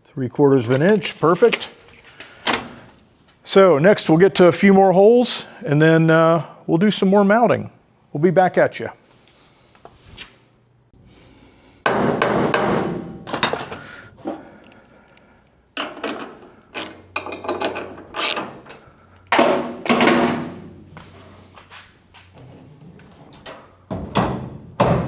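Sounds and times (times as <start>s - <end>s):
loud knocks and bangs on metal: 11.9s - 13.8s, 19.4s - 20.7s, 23.9s - 25.0s.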